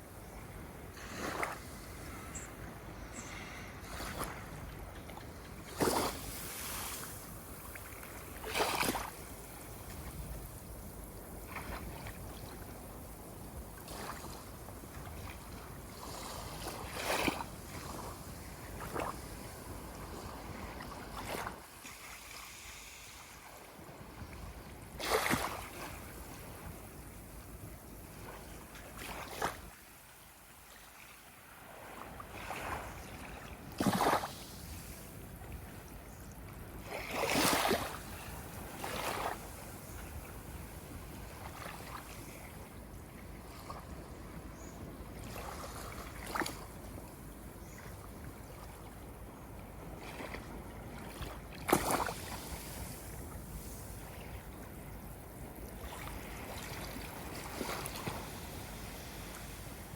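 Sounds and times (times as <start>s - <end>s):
ocean waves washing on shore: 0.0s - 59.9s
ocean waves breaking: 0.5s - 10.3s, 36.8s - 42.5s
water lapping: 0.6s - 10.2s, 13.8s - 23.8s, 45.2s - 46.9s, 49.9s - 54.4s, 55.8s - 59.9s.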